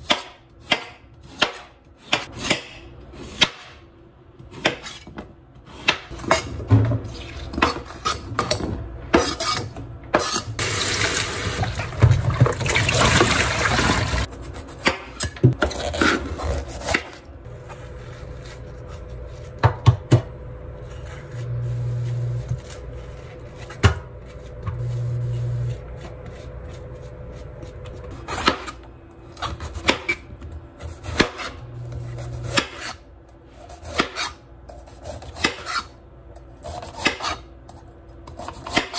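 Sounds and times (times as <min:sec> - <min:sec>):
water running: 0:10.6 - 0:14.3.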